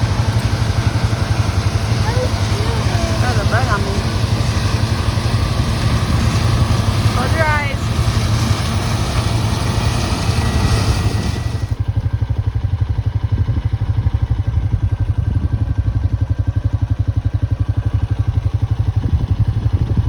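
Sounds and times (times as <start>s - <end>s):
rushing hiss: 0.0s - 11.8s
atv engine puttering: 0.0s - 20.0s.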